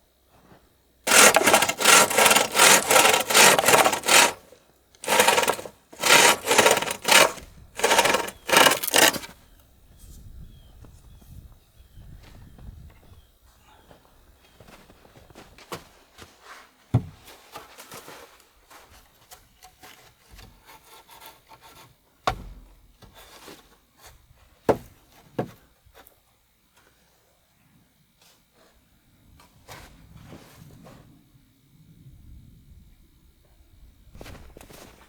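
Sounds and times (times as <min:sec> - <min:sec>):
scraping and rubbing wood: 0:01.1 - 0:04.4, 0:05.0 - 0:09.3.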